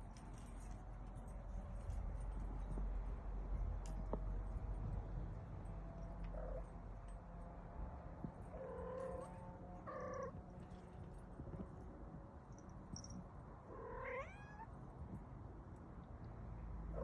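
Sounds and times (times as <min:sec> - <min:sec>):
cat making soft calls: 0:13.7 - 0:14.7.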